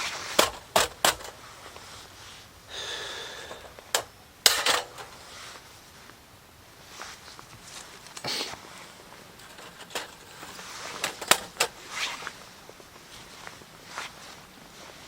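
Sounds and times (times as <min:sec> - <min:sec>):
short rustles: 0:03.4 - 0:15.0.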